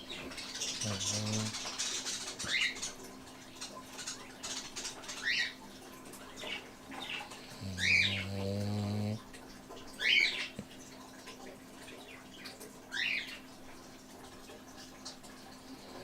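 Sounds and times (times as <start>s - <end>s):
low droning snore: 7.5s - 9.2s.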